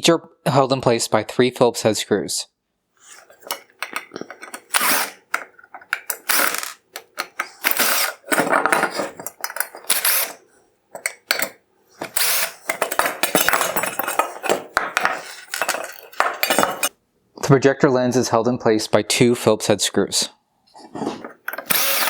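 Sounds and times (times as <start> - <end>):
screws being removed from plastic: 3.1 - 16.9, 21.2 - 22.0
plastic parts rattling and clattering: 3.2 - 16.9, 21.2 - 22.0.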